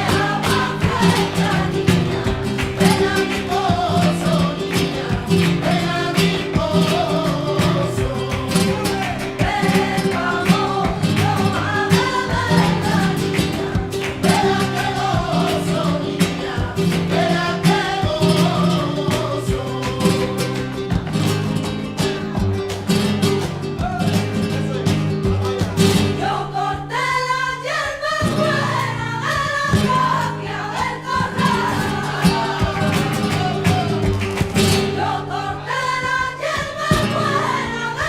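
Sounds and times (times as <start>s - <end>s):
person singing: 0.0s - 21.1s, 31.4s - 34.2s
strummed flamenco guitar: 0.0s - 38.0s.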